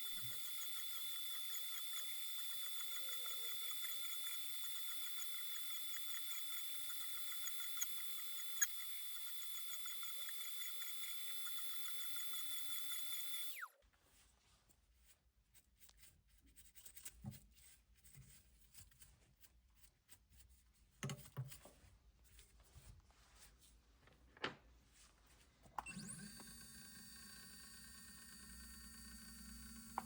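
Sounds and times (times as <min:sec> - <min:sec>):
mill spindle whining: 0:00.0 - 0:13.7, 0:25.8 - 0:30.0.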